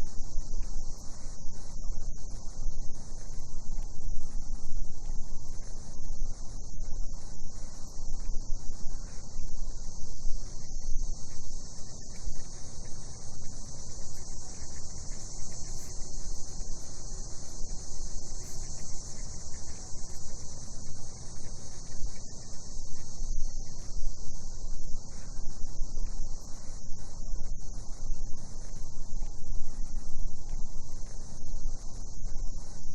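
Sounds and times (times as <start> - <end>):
cicadas singing: 9.0 - 32.8.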